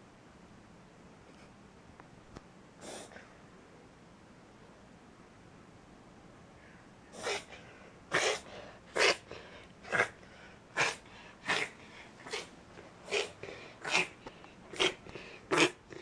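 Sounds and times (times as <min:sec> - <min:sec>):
dog reverse sneezing: 0:02.8 - 0:03.3, 0:07.1 - 0:09.3.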